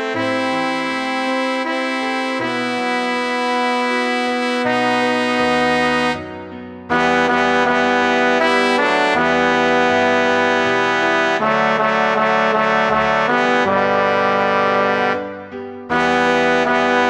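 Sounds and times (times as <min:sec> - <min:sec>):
synthesized choral chords: 0:04.1 - 0:17.0.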